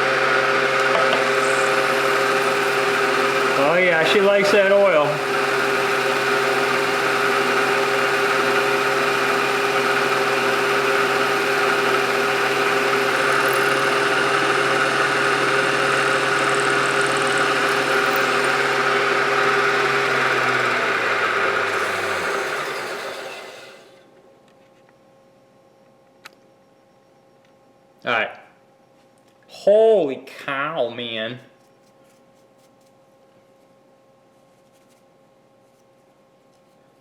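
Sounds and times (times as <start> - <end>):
machine tool cutting steel: 0.6 - 23.9.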